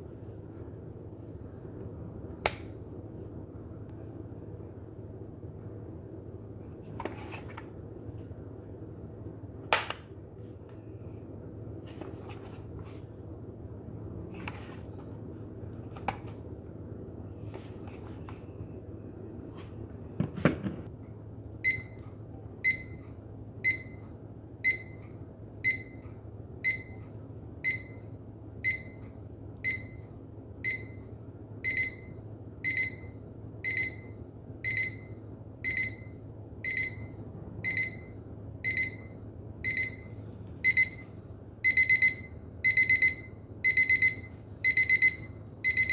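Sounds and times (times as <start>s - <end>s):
alarm clock beeping: 21.6s - 22.0s, 22.6s - 23.0s, 23.6s - 24.0s, 24.6s - 25.0s, 25.6s - 26.0s, 26.6s - 27.0s, 27.6s - 29.0s, 29.6s - 30.0s, 30.6s - 45.9s.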